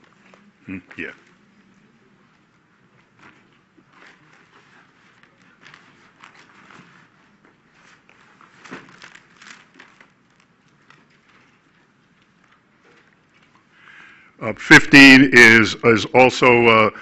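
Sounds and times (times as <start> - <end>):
paper rustling: 3.0 - 13.6.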